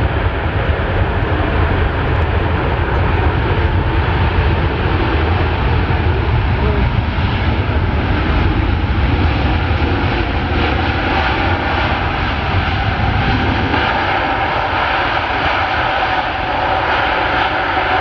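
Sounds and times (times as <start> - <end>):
jet engines rumbling with whine: 0.0 - 18.0.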